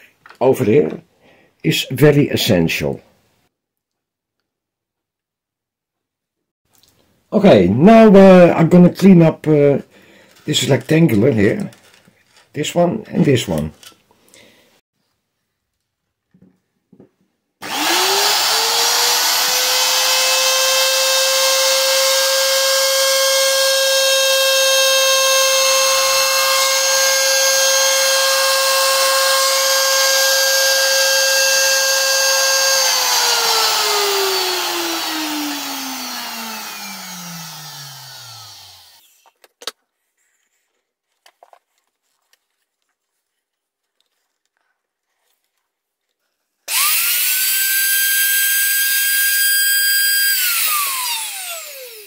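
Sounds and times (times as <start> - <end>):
router motor whining: 17.6 - 39.3, 46.7 - 52.0.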